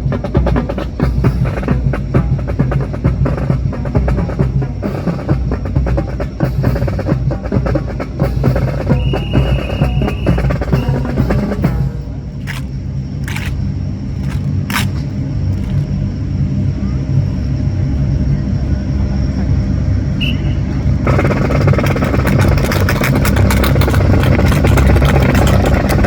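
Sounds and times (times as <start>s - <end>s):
rapid drumming: 0.0s - 13.6s, 21.1s - 26.0s
steady low rumble: 0.0s - 26.0s.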